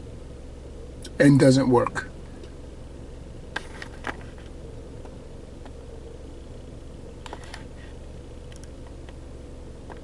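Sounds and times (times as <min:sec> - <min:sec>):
car engine idling: 0:00.0 - 0:10.0
light clicks: 0:08.5 - 0:09.2.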